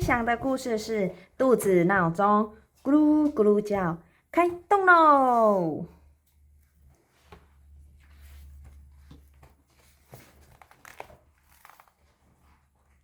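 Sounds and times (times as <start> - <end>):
light clicks of book handling: 6.2 - 13.0
paper pages rustling: 6.9 - 13.0.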